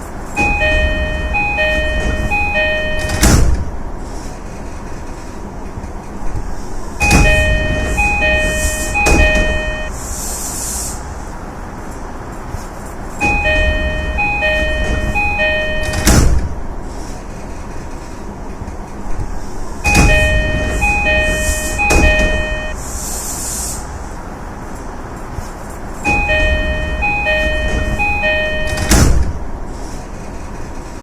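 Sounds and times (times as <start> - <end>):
two-note train door chime: 0.4 - 3.5, 7.0 - 10.0, 13.2 - 16.4, 19.9 - 22.9, 26.0 - 29.2
sliding doors thudding shut: 0.4 - 3.7, 5.8 - 10.0, 13.2 - 16.6, 18.7 - 22.8, 26.0 - 29.4.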